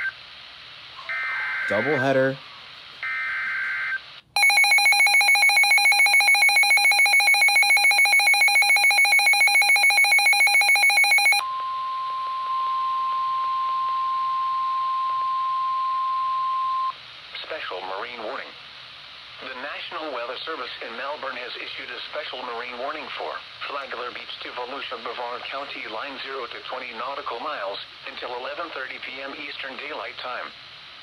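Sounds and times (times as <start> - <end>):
steady high warning tone: 4.4 - 16.9.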